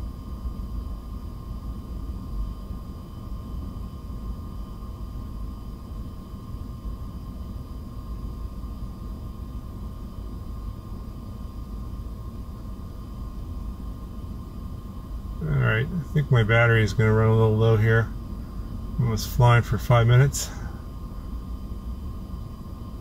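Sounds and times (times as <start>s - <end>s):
low background rumble: 0.0s - 23.0s.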